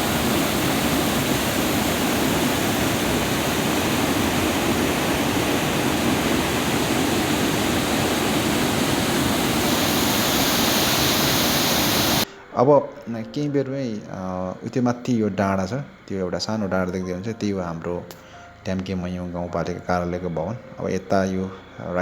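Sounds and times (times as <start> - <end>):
river water rushing: 0.0 - 12.2.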